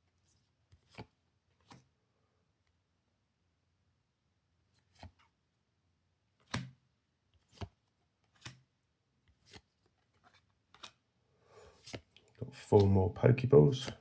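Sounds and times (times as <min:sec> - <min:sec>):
trading cards tapping: 0:12.6 - 0:14.0.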